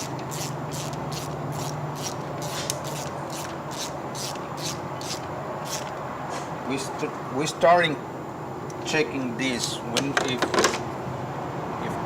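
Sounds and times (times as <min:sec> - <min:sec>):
ratchet wrench clicking: 0:00.0 - 0:06.0.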